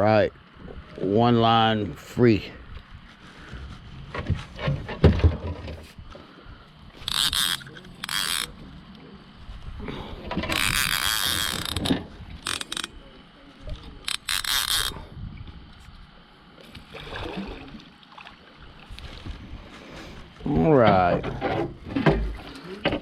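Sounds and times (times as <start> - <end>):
fishing reel clicking: 7.0 - 8.6, 10.4 - 13.0, 13.8 - 15.1.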